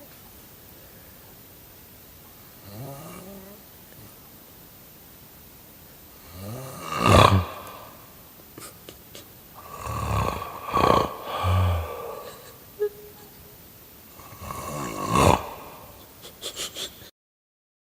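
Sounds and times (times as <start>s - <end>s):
man snoring: 2.6s - 3.6s, 6.2s - 8.2s, 9.6s - 12.7s, 14.1s - 16.1s.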